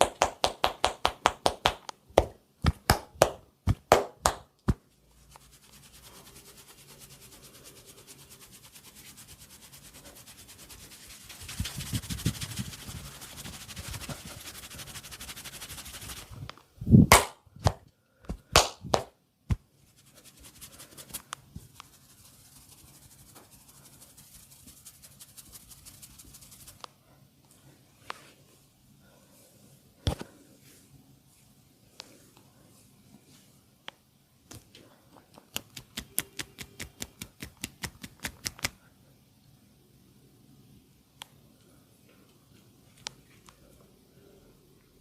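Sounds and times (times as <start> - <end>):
sharp hand slaps: 0.0 - 4.8, 17.1 - 17.8, 18.5 - 19.1
hands massaging crackling and rubbing: 0.0 - 16.5, 18.5 - 26.9, 35.2 - 38.8.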